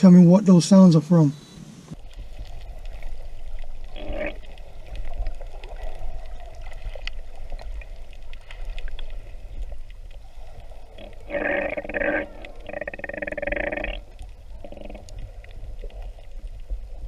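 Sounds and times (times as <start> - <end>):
underwater rumble: 1.4 - 17.0.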